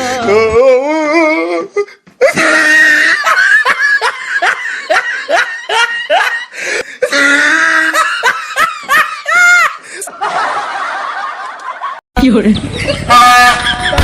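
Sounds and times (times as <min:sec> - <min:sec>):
loud hearty laughter: 0:02.2 - 0:12.0, 0:12.7 - 0:14.0.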